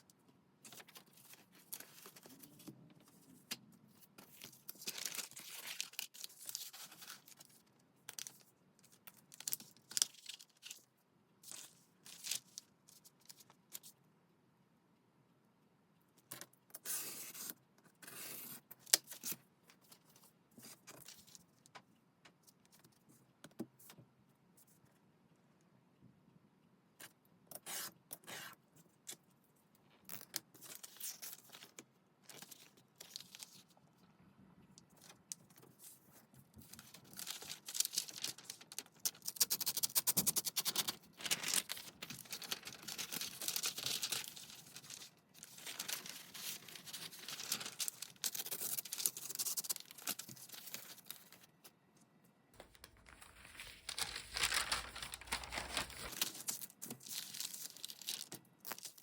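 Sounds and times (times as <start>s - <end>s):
paper rustling and tearing: 36.8s - 51.4s, 52.6s - 59.0s.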